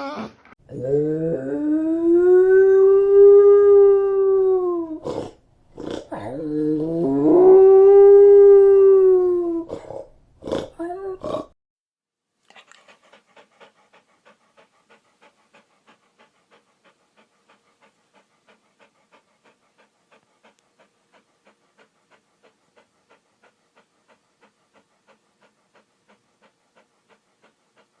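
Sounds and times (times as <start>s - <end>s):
dog panting: 12.5s - 28.0s.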